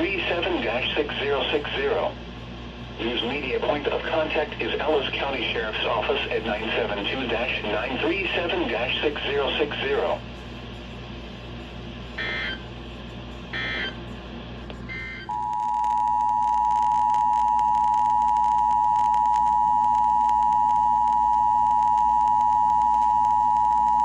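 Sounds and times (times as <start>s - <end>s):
buzzy digital data bursts: 12.0s - 12.8s
steady single-pitch attention tone: 12.2s - 12.8s, 13.5s - 14.0s, 14.9s - 24.0s.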